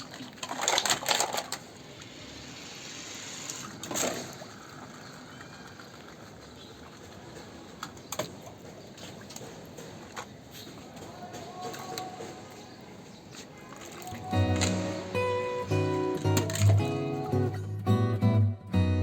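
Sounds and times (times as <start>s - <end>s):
water splashing: 0.0s - 0.9s, 13.4s - 15.3s
water trickling: 3.1s - 9.5s, 13.4s - 15.0s.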